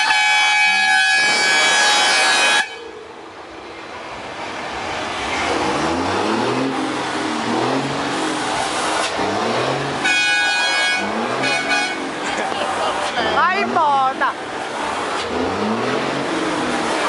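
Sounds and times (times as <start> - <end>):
truck air horn blast: 0.0 - 3.0, 10.0 - 12.2
diesel engine accelerating: 3.3 - 17.0.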